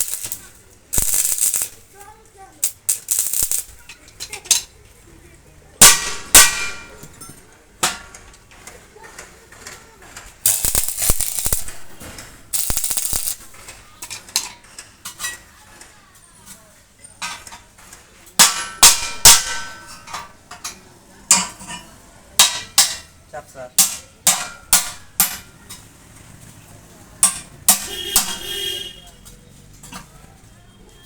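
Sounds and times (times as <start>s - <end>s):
hiss bursts: 0.0s - 1.8s, 2.6s - 3.8s, 10.4s - 13.7s
metal objects clanking: 5.8s - 15.5s, 17.2s - 23.1s.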